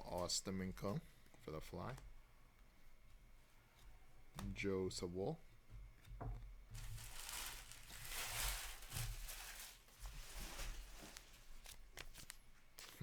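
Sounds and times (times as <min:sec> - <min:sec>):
trading cards rustling and sliding: 0:10.9 - 0:13.0.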